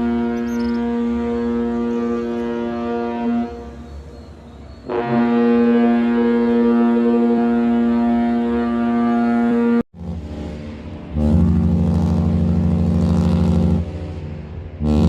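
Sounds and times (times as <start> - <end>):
ship horn blasts: 0.0 - 15.0.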